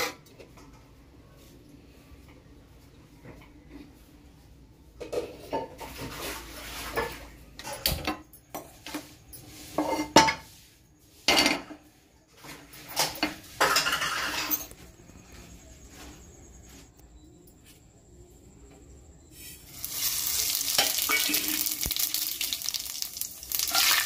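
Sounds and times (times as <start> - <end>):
utensils and dishes clinking: 5.0 - 10.5, 11.2 - 14.9, 19.4 - 24.0.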